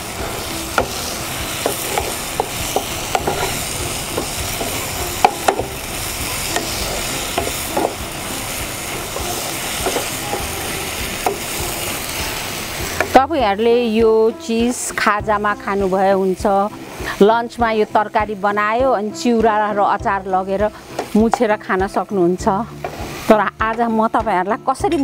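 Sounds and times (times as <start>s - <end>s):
food sizzling in a pan: 0.0s - 24.8s
utensil scraping a pan: 0.1s - 13.2s, 22.7s - 23.4s.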